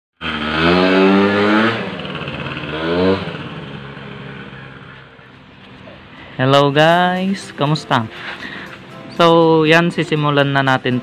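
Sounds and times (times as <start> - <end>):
scooter engine revving: 0.2 - 7.5.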